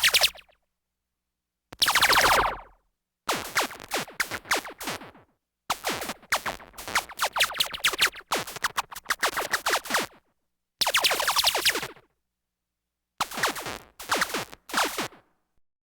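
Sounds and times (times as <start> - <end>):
sci-fi laser blaster zaps: 1.8 - 2.8.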